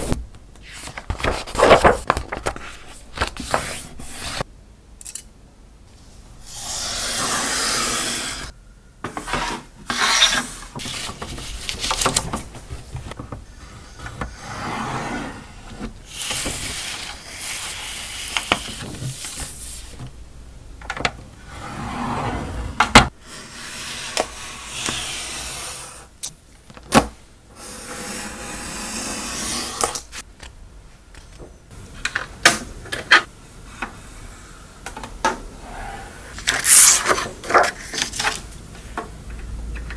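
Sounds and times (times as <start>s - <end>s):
paper rustling and sliding: 0.0s - 4.5s, 9.3s - 20.1s
paper fold clicks and taps: 10.8s - 13.5s.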